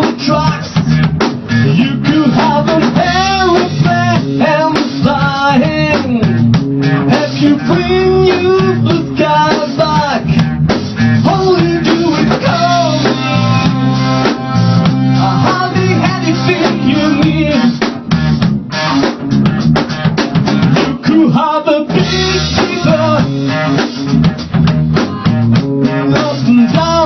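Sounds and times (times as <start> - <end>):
person singing: 0.0 - 10.3, 11.2 - 17.8, 20.8 - 23.7, 25.0 - 27.0
drum kit: 0.0 - 27.0
electric guitar: 0.0 - 27.0.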